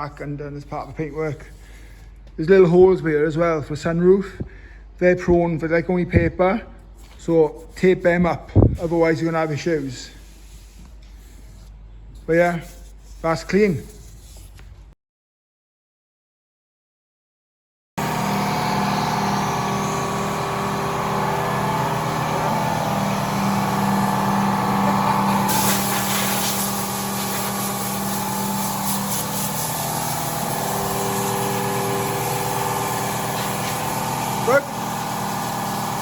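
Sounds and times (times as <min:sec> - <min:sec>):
machine humming: 0:18.0 - 0:36.0
hiss: 0:25.3 - 0:34.6.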